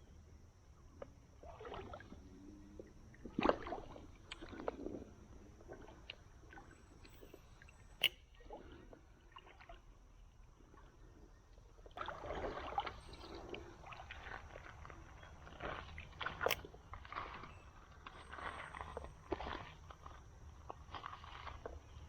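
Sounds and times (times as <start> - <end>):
creek water splashing: 3.2 - 9.8, 12.0 - 22.0
sharp click: 8.0 - 8.2.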